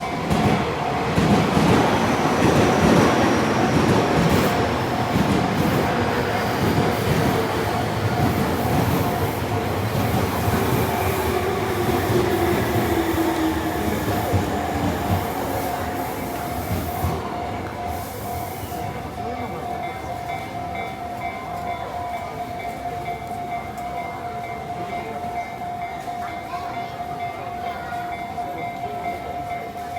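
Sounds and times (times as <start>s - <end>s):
train whine: 0.0s - 20.0s
train wheels clattering on rails: 0.0s - 29.9s.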